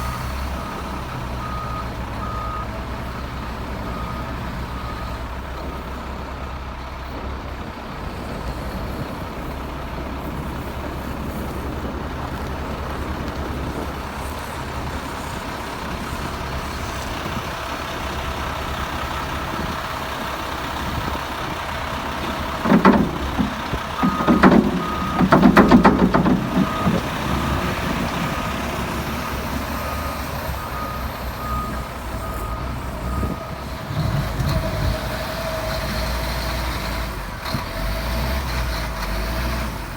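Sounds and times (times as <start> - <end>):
heavy diesel equipment running: 0.0 - 39.9
rough engine surges: 22.6 - 30.4.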